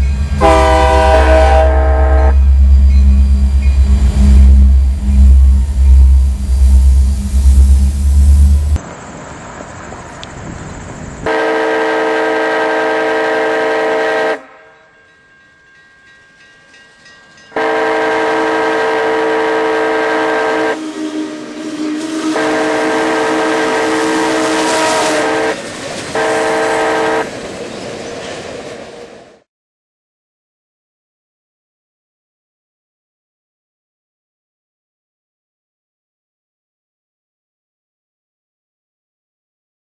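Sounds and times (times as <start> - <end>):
steam locomotive whistle: 0.0 - 8.8, 11.3 - 14.9, 17.6 - 27.3
heavy low rumble: 1.8 - 11.2.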